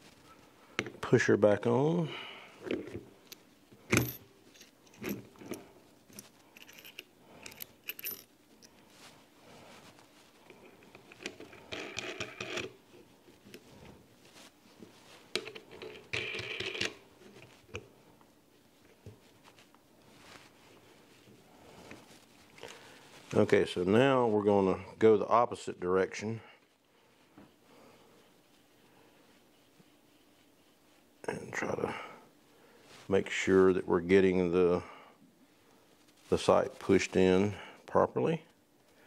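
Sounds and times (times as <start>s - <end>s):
metallic clicks and clinks: 6.2s - 8.3s.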